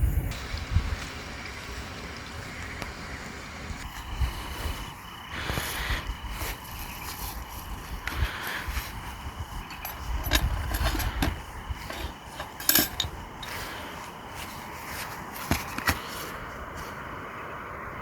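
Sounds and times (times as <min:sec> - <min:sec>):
wind rumble on microphone: 0:00.0 - 0:18.0
hard objects knocking and clinking: 0:09.7 - 0:13.6.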